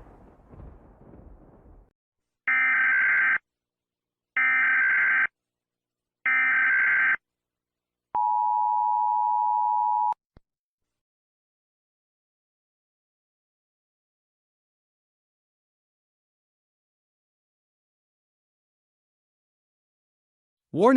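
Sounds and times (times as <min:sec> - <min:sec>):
low rumble of an explosion: 0:00.0 - 0:01.9.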